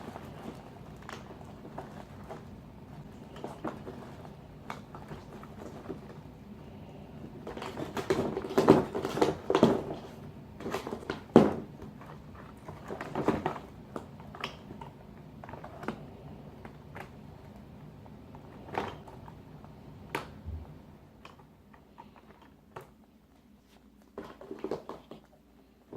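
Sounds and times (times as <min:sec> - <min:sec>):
cat scuffling: 0:00.0 - 0:17.6.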